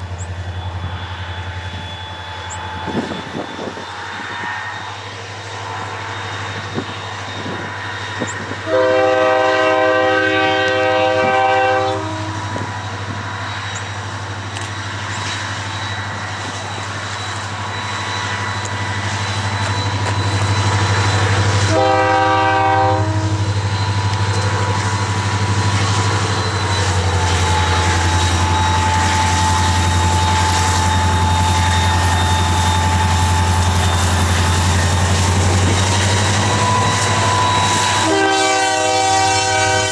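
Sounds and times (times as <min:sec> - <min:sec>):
diesel locomotive engine droning: 0:00.0 - 0:39.9
locomotive air horn blasts: 0:07.4 - 0:12.7, 0:20.1 - 0:39.9.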